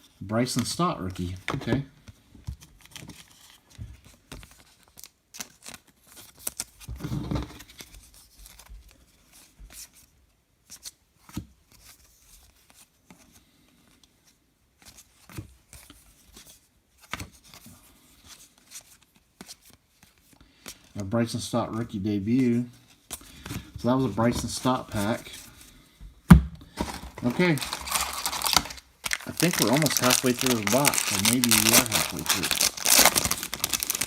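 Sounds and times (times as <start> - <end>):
light clicks and scrapes of cards: 7.6 - 21.0
cards being handled: 14.0 - 21.0, 22.4 - 25.7, 26.7 - 34.0.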